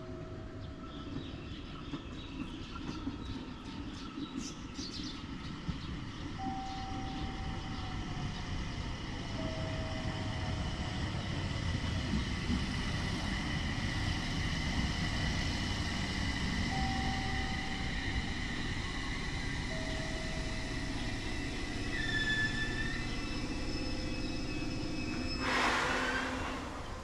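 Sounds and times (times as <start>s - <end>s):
steady high tone: 16.4s - 25.4s.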